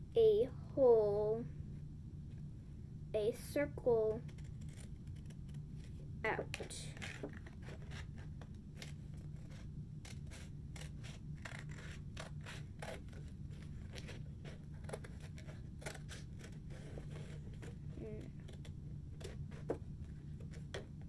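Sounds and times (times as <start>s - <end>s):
scissors snipping thick paper: 8.8s - 19.8s.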